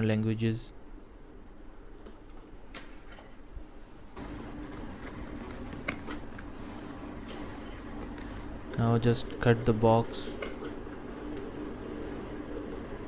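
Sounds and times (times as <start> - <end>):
steady low hum: 0.0 - 13.0
packaging clicks and rustles: 4.2 - 6.6.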